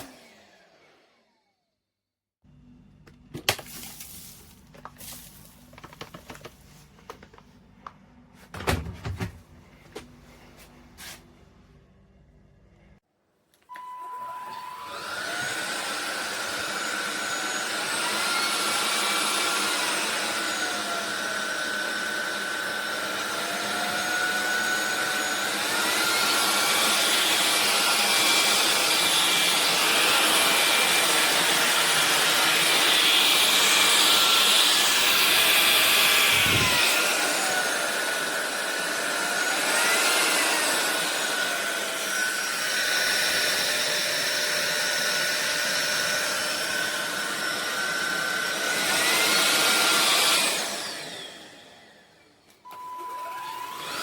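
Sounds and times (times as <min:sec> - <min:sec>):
vacuum cleaner motor whine: 0:00.0 - 0:01.8, 0:13.6 - 0:54.0.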